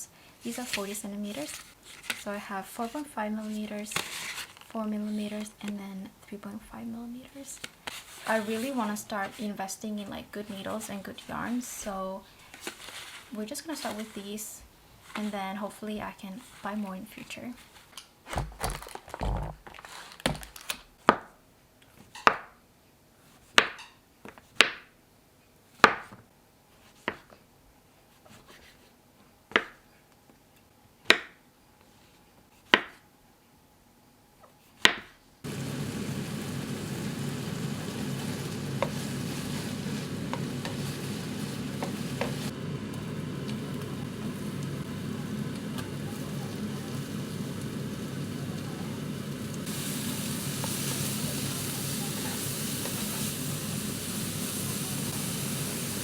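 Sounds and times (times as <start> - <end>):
sizzling hiss: 6.7 - 17.8, 35.4 - 56.0.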